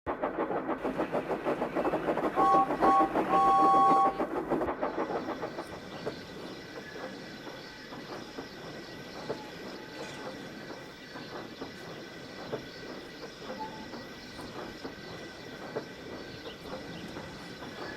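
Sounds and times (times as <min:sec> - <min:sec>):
steam locomotive chugging: 0:00.1 - 0:17.9
two-note train whistle: 0:02.4 - 0:04.3.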